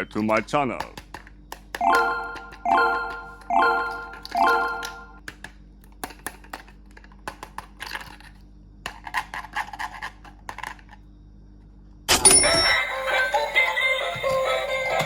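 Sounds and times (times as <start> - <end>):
chime note: 1.8 - 5.2
small objects clicking and rattling: 6.0 - 11.0.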